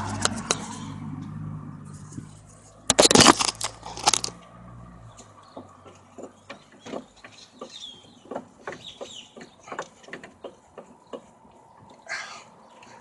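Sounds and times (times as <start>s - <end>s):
caliper piston scraping crackle: 1.8s - 4.4s.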